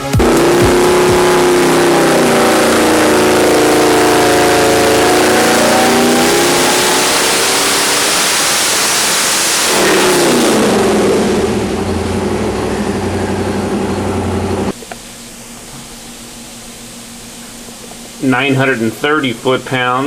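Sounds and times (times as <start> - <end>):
heavy rushing noise: 0.0 - 14.7
engine running hard: 0.0 - 14.8.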